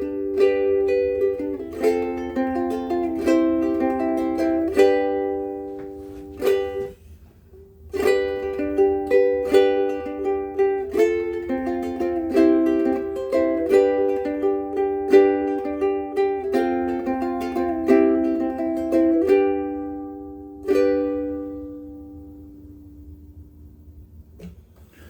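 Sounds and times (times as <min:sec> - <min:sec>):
ukulele chords: 0:00.0 - 0:25.0.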